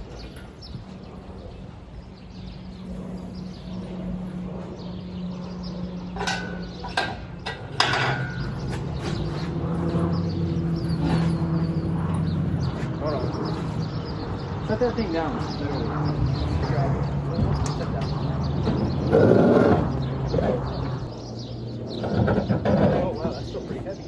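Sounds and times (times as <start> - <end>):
low mechanical hum: 17.2 - 23.8.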